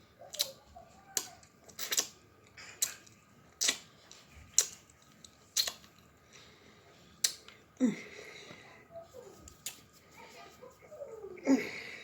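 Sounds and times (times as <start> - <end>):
faint hum: 0.0 - 12.0
wet lip smacks while eating: 0.3 - 6.1, 7.2 - 7.6.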